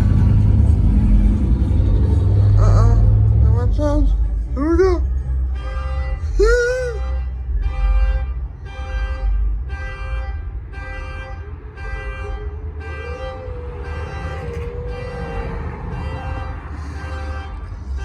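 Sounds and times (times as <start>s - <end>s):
low engine rumble: 0.0s - 18.0s
vehicle horn honking: 5.0s - 18.0s
wavering tone: 12.3s - 16.8s.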